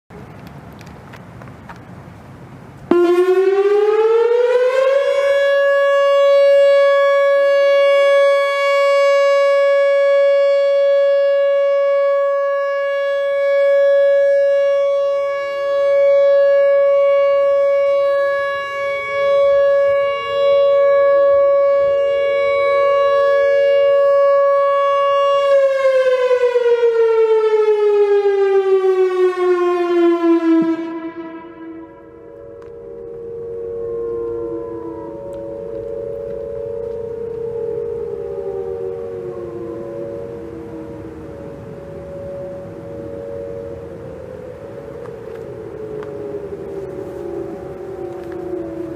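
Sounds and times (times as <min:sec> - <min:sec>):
electronic warning siren: 0:02.9 - 0:48.9
fainter rising siren tones: 0:02.9 - 0:48.9.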